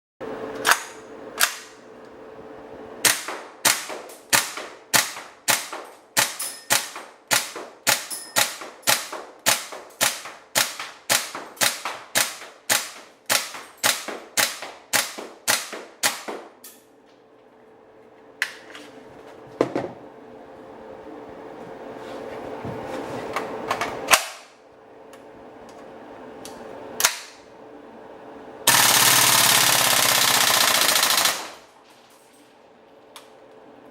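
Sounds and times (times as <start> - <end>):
airsoft gun shots: 3.0 - 16.6, 28.7 - 31.6.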